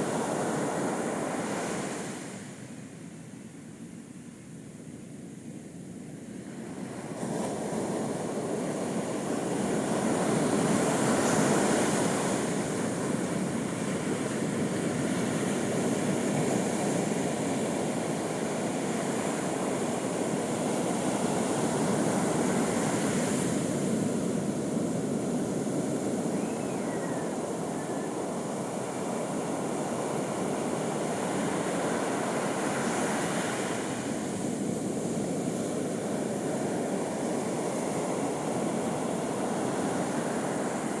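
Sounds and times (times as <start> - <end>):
sea waves breaking on beach: 27.2 - 41.0.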